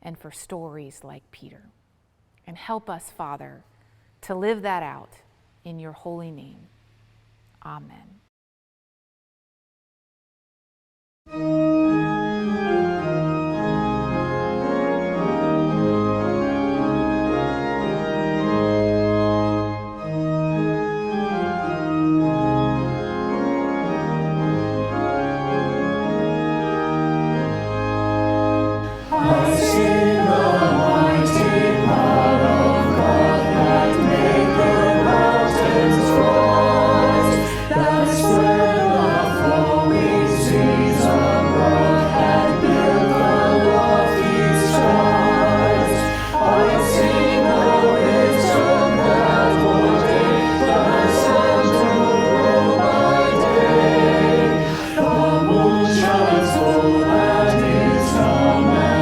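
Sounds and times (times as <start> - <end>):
organ playing held chords: 11.3 - 59.0
group singing a hymn: 28.8 - 59.0.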